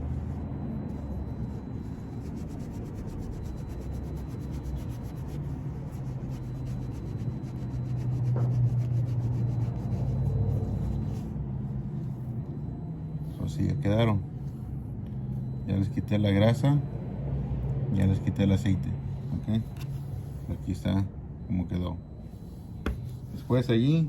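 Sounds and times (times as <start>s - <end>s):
steady low hum: 0.0s - 24.0s
cloth rubbing brake pads: 1.0s - 11.4s.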